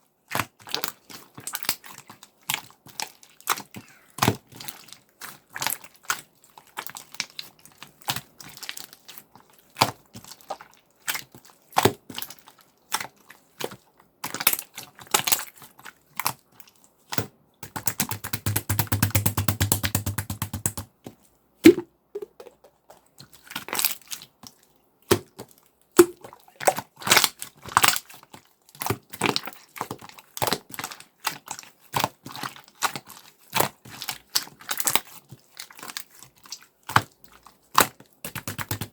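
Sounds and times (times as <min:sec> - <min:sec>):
slime squishing with wet clicks: 0:00.2 - 0:19.1, 0:23.2 - 0:38.9
fast run of clicks: 0:17.9 - 0:20.8, 0:38.3 - 0:38.9.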